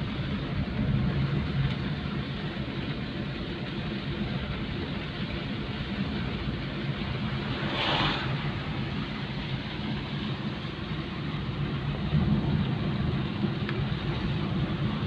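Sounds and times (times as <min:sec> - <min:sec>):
vehicle running hum: 0:00.0 - 0:15.0
rush of hiss: 0:07.1 - 0:09.9.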